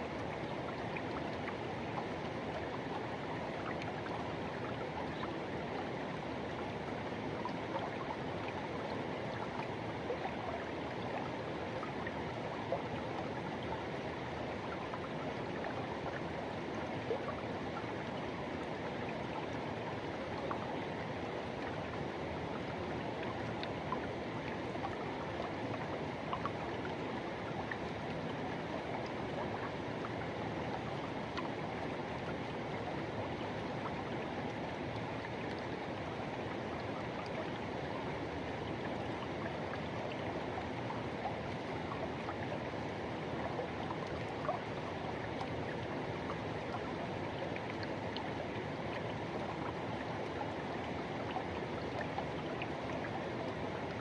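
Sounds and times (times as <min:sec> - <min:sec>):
river water rushing over rocks: 0:17.4 - 0:54.0.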